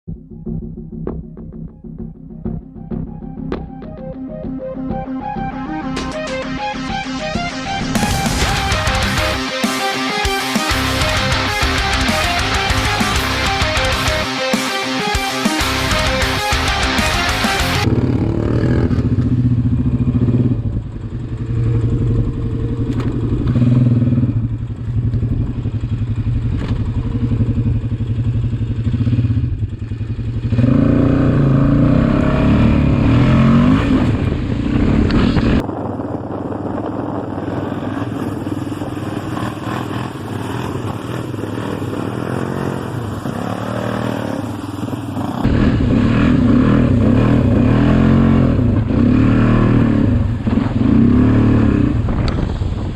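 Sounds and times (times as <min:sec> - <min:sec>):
atv engine revving: 0:15.7 - 0:35.7, 0:36.6 - 0:52.5.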